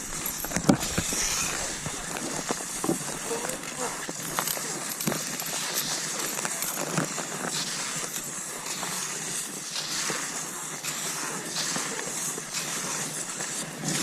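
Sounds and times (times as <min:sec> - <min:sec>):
skis swishing over snow: 0:00.0 - 0:14.0.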